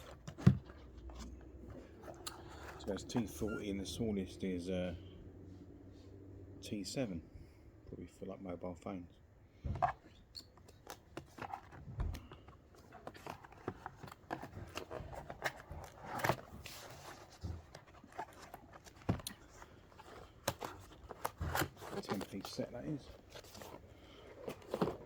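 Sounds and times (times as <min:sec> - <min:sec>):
plastic packaging handled: 0:10.5 - 0:25.0.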